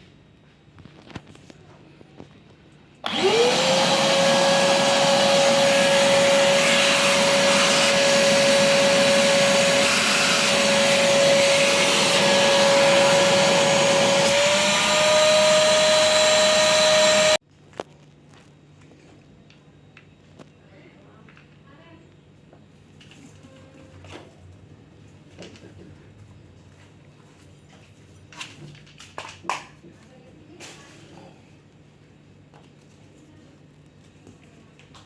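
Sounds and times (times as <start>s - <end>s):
vacuum cleaner motor whining: 3.0s - 17.4s.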